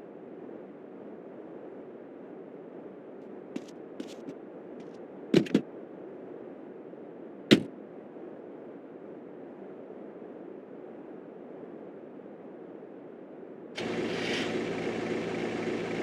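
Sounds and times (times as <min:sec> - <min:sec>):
steady background noise: 0:00.0 - 0:13.8
sharp knocks: 0:05.4 - 0:05.6.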